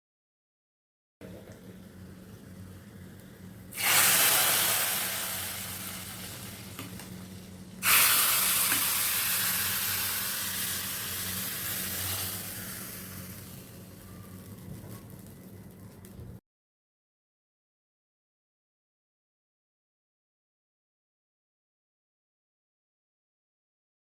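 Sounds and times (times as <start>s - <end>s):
food sizzling in hot oil: 3.5s - 15.6s.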